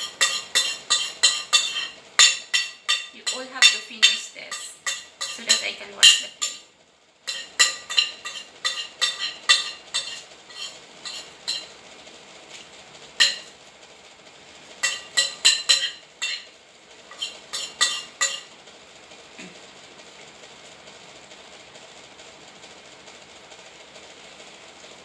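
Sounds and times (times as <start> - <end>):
metal clinking on dishes: 0.0 - 6.7, 7.3 - 11.7, 13.2 - 13.5, 14.8 - 18.5.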